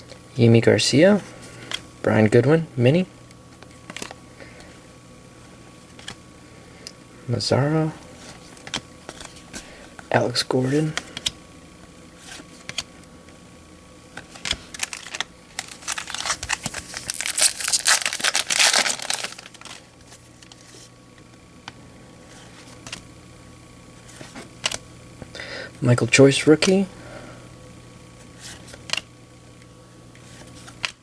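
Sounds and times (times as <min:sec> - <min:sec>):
card pack wrapper crinkling: 0:14.2 - 0:20.8.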